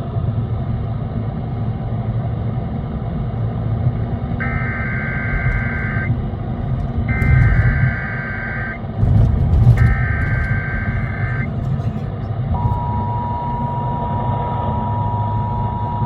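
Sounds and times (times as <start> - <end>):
steady low rumble: 0.0 - 16.0
buzzy digital tone bursts: 7.1 - 8.8.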